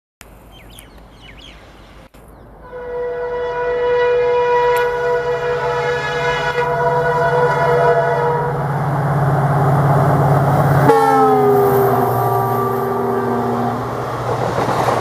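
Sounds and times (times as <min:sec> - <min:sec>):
birds chirping: 0:00.3 - 0:02.6
rumble of oncoming train: 0:00.3 - 0:15.0
train horn blast: 0:02.6 - 0:09.0, 0:10.8 - 0:14.0.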